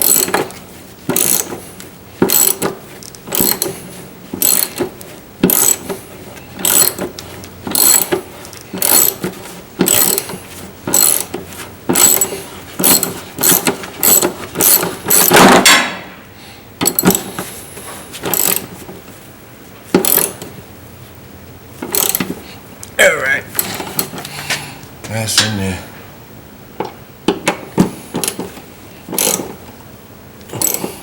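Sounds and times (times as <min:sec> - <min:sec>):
ratchet wrench clicking: 0:00.0 - 0:01.6, 0:02.3 - 0:03.8, 0:04.4 - 0:06.0, 0:06.6 - 0:15.4, 0:16.8 - 0:17.3, 0:18.3 - 0:18.7, 0:20.0 - 0:20.5, 0:21.8 - 0:22.4, 0:29.1 - 0:29.6, 0:30.5 - 0:30.9.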